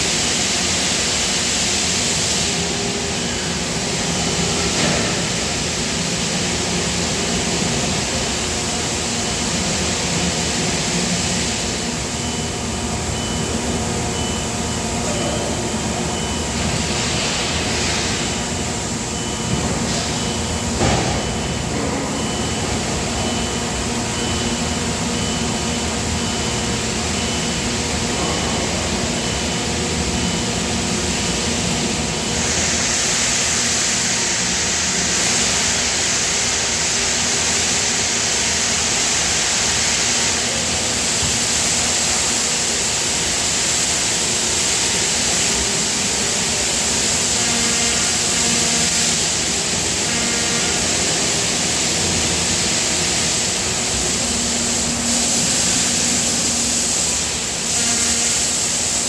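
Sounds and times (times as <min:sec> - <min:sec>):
factory machinery hum: 0:00.0 - 0:59.0
loud hiss: 0:30.2 - 0:59.0.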